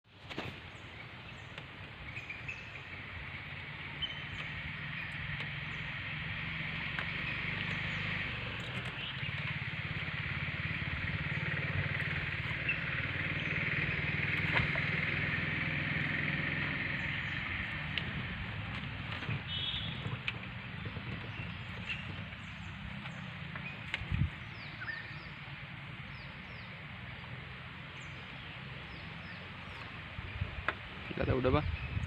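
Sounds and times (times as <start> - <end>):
small engine running: 4.0 - 23.8.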